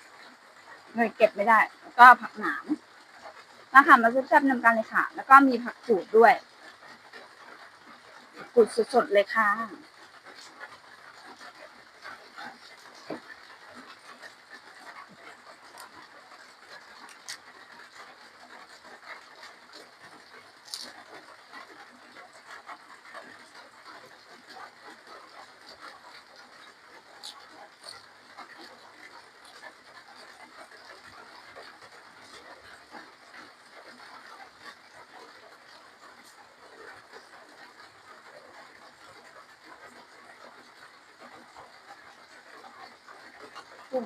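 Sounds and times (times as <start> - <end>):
wet chewing and lip smacks: 11.3 - 18.6, 20.1 - 21.8, 27.1 - 30.3
person chewing: 17.0 - 17.4, 20.6 - 20.9, 27.2 - 28.0.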